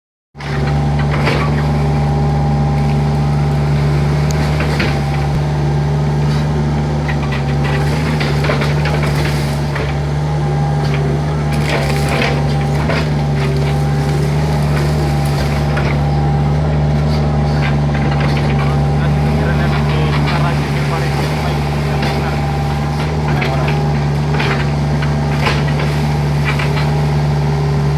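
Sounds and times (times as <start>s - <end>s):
excavator diesel engine running: 0.4s - 27.9s.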